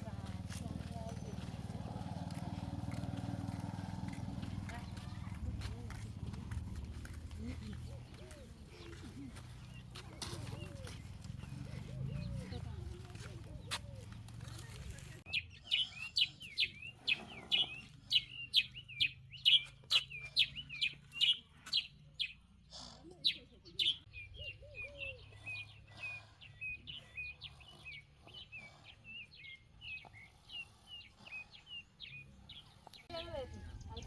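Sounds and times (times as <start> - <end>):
bird chirping: 7.0 - 34.0.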